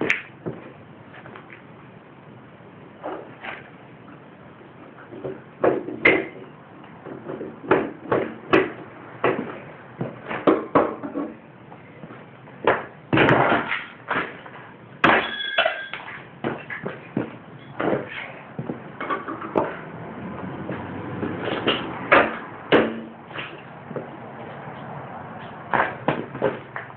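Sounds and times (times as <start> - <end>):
ringing metal clangs: 15.0 - 16.1.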